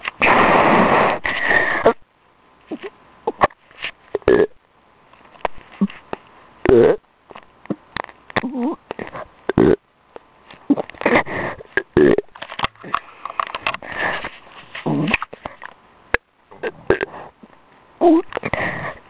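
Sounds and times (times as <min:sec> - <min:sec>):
pet burping: 0:02.7 - 0:04.6, 0:06.6 - 0:07.0, 0:08.4 - 0:09.9, 0:10.7 - 0:13.0, 0:14.8 - 0:17.3.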